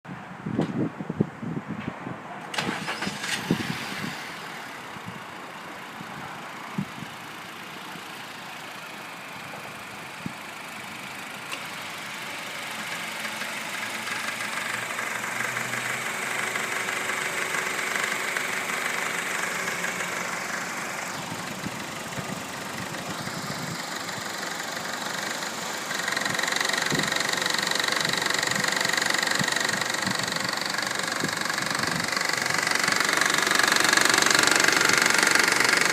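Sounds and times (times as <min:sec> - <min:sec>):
car engine idling with knocking: 0:05.0 - 0:35.9.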